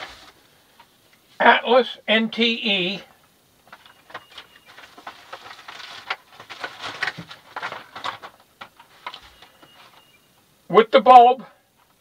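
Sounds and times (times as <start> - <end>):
package rustling: 3.7 - 10.1.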